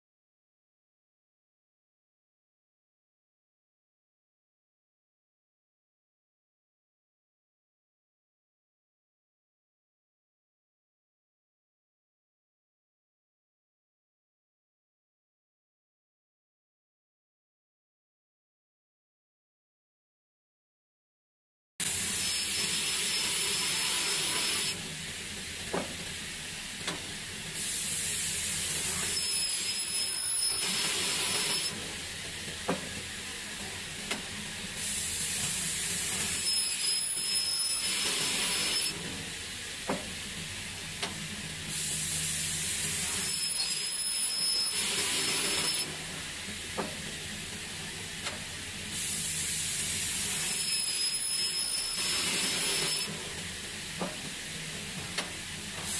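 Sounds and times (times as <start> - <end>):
saw cutting metal with loud hiss: 21.8 - 33.4, 34.0 - 55.9.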